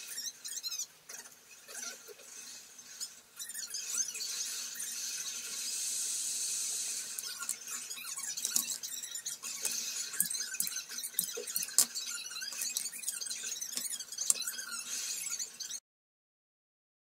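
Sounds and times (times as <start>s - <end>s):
small hard parts clicking: 7.1s - 14.8s.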